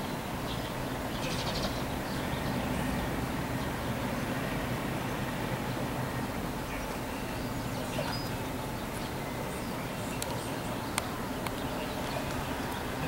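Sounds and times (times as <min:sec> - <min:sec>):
electric train hum: 0:00.0 - 0:13.0.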